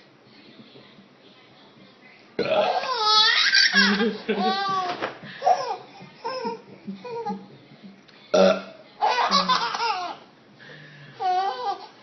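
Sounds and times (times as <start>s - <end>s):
woman fake burp: 2.4s - 2.9s, 8.3s - 8.8s
baby laughing: 2.8s - 7.4s, 9.0s - 10.2s, 11.2s - 12.0s.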